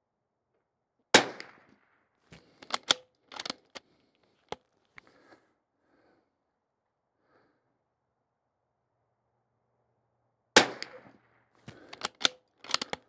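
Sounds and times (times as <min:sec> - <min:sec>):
rifle shot: 0:01.2 - 0:01.6, 0:10.6 - 0:13.0
rifle bolt clicking: 0:02.4 - 0:03.8, 0:11.7 - 0:13.0.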